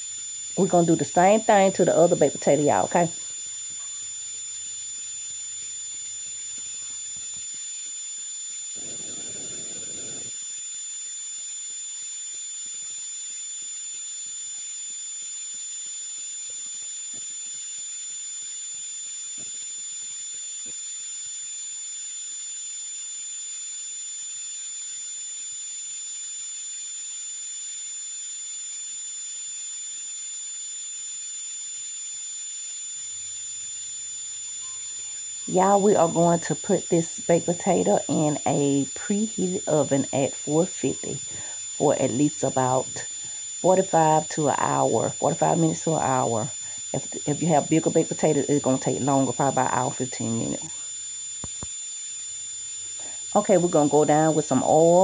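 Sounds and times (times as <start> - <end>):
high-pitched whine: 0.0 - 10.7, 32.6 - 55.0
hiss: 8.7 - 10.4.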